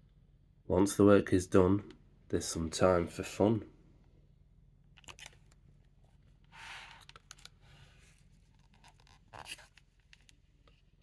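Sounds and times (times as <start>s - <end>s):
book pages rustling: 5.0s - 11.0s.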